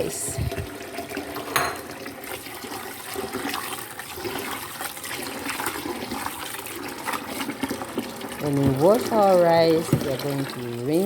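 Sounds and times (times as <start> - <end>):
water splashing as rice is washed: 0.0 - 11.0.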